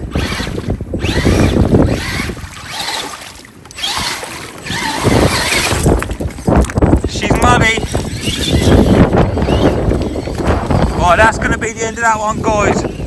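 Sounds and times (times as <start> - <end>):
strong wind buffeting microphone: 0.0 - 13.0.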